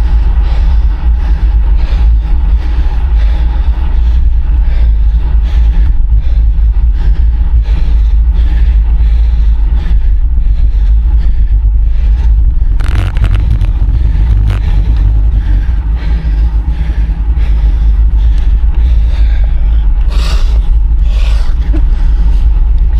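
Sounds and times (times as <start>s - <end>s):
wind rumbling on microphone: 0.0s - 22.9s
road noise: 10.6s - 22.9s.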